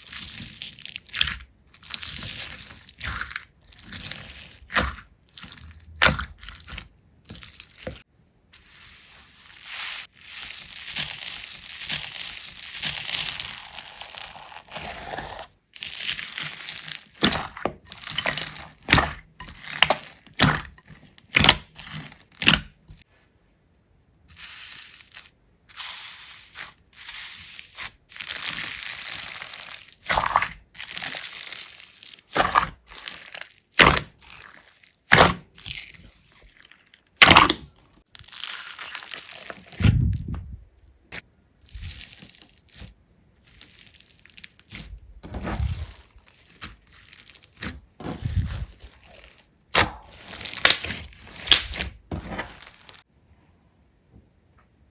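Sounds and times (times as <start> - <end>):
slime squished by hand: 24.4 - 53.1.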